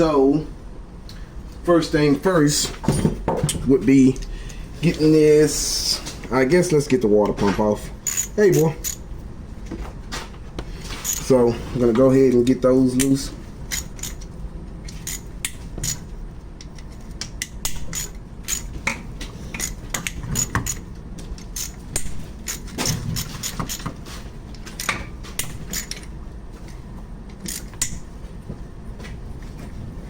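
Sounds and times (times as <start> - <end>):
ratchet clicking: 17.4 - 18.7.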